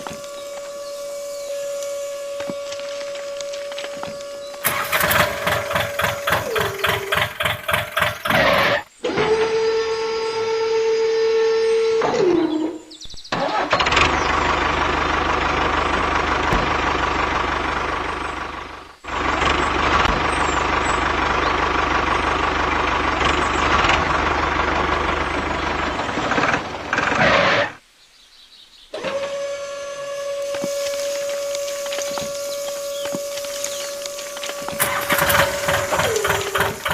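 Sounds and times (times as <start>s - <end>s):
engine running: 0.0s - 11.8s, 12.6s - 27.8s, 29.0s - 36.9s
engine cranking and starting: 4.5s - 9.6s, 13.3s - 27.8s, 29.0s - 36.9s.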